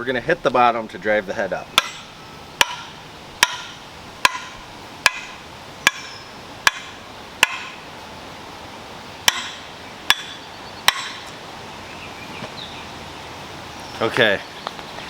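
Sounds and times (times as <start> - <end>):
hammer knocking wooden handle: 1.8 - 7.8.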